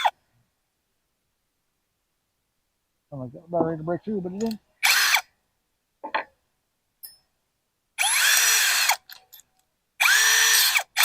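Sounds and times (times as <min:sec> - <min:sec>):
electric drill boring plastic: 0:04.9 - 0:05.2, 0:08.0 - 0:09.2, 0:10.0 - 0:11.0.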